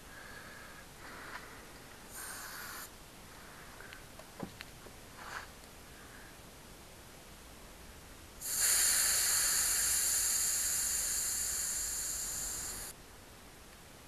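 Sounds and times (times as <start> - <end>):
air hissing out of inner tube: 2.1 - 2.9, 8.4 - 13.0.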